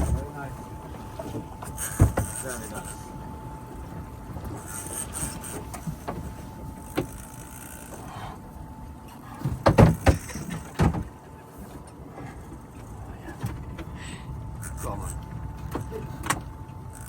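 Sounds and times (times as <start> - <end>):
faint steady whine: 0.0 - 17.0
reel clicks: 1.2 - 11.1, 11.7 - 17.0
fishing reel being cranked: 1.6 - 3.1, 4.5 - 8.4, 9.1 - 10.8, 14.6 - 17.0.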